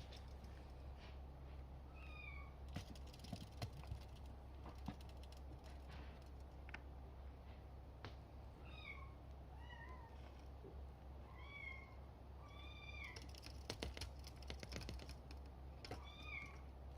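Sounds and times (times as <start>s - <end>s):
scratchy clicks and taps: 13.1s - 16.5s.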